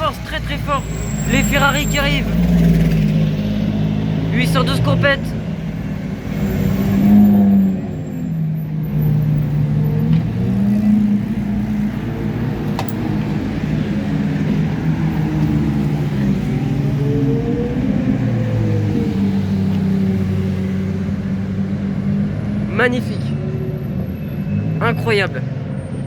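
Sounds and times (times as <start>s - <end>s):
sports car engines at low revs: 8.7s - 22.7s.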